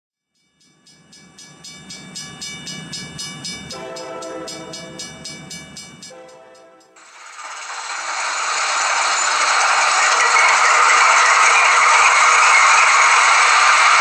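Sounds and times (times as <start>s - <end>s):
ringing locomotive bell: 0.4s - 14.0s.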